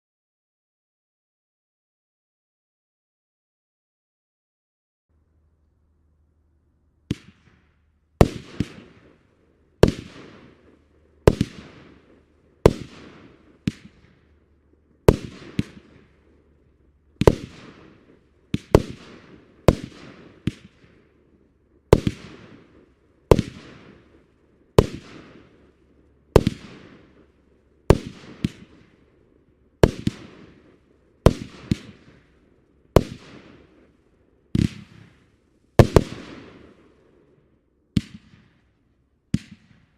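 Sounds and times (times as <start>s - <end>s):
fireworks banging: 7.1s - 16.5s, 17.2s - 21.2s, 21.9s - 29.2s, 29.8s - 37.2s.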